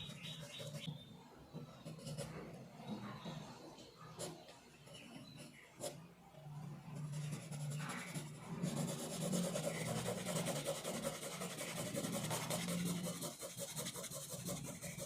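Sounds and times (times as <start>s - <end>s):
pencil scratching on paper: 0.0s - 0.9s, 1.6s - 2.6s, 6.6s - 15.0s.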